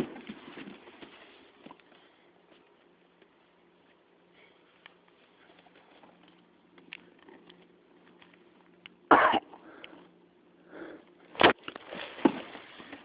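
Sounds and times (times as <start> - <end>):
faint low hum: 0.0 - 13.0
person coughing: 9.1 - 9.5.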